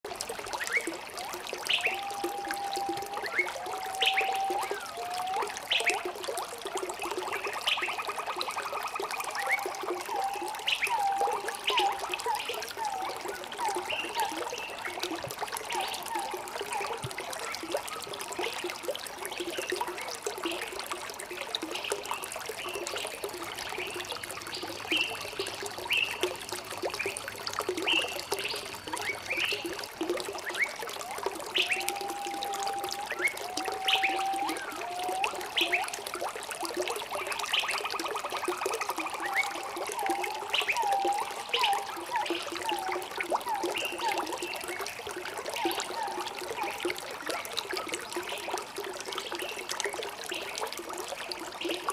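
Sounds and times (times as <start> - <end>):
stream trickling: 0.0 - 51.9
birds chirping and whistling: 1.7 - 6.0, 31.5 - 35.9.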